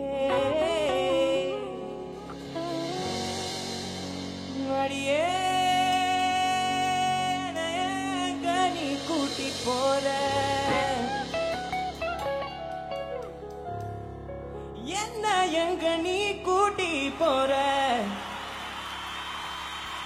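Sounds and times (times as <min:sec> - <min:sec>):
person singing: 0:00.0 - 0:12.0, 0:14.8 - 0:18.6
live band playing: 0:00.0 - 0:14.2.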